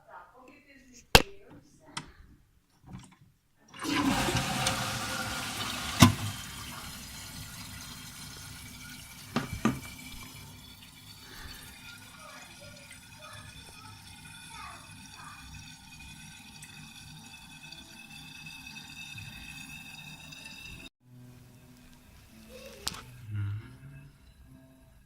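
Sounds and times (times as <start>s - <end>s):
toilet cistern refilling: 3.7s - 20.9s.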